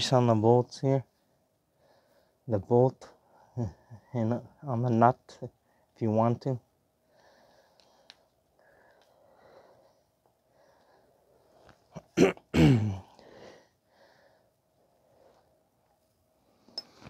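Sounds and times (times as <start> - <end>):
man sneezing: 12.0 - 13.2
faint handling noise: 15.4 - 17.0.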